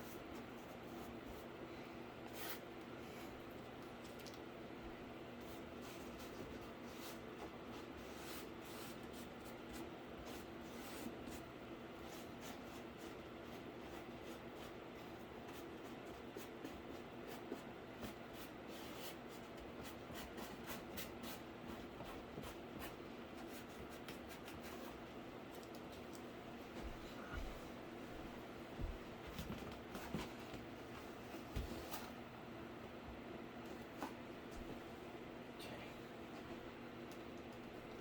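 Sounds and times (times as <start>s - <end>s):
steady low hum: 0.0s - 38.0s
paintbrush scratching cardboard: 5.4s - 25.0s.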